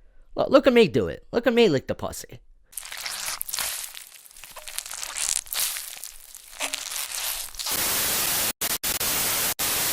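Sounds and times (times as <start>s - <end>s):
rustling and crinkling: 2.8s - 7.8s
static hiss: 6.6s - 9.9s.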